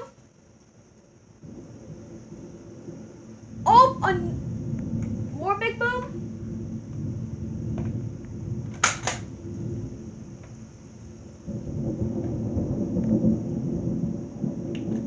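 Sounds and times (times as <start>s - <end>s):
thunder rumbling: 0.0s - 0.3s, 1.3s - 15.0s
sharp clicks: 8.8s - 9.3s.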